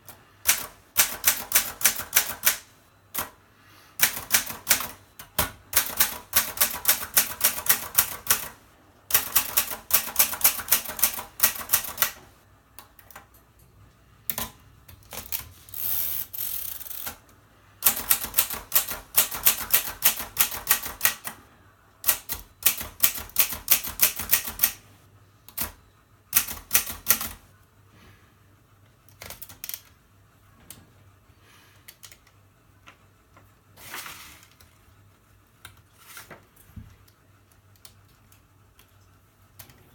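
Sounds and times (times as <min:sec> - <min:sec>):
typewriter keystrokes: 0:00.0 - 0:03.4, 0:04.0 - 0:13.4, 0:17.8 - 0:21.4, 0:22.0 - 0:24.8, 0:25.5 - 0:27.4, 0:29.1 - 0:29.9.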